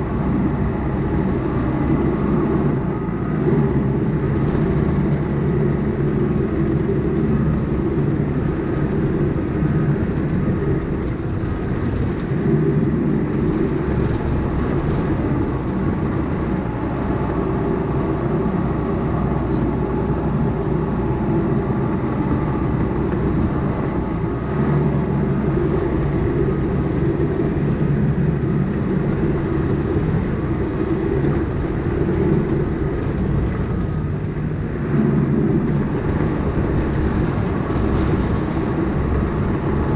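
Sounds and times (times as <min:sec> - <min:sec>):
diesel engine running under load: 0:00.0 - 0:39.9
tracks clicking: 0:13.3 - 0:39.9.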